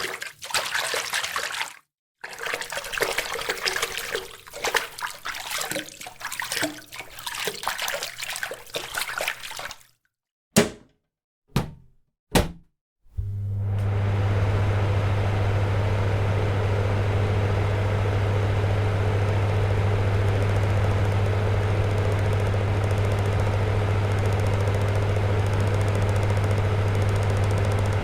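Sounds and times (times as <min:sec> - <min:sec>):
low machine hum: 0:13.2 - 0:28.0.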